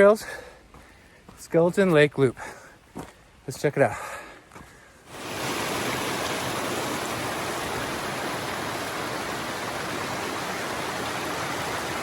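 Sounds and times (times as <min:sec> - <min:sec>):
creek water rushing: 0:05.1 - 0:12.0.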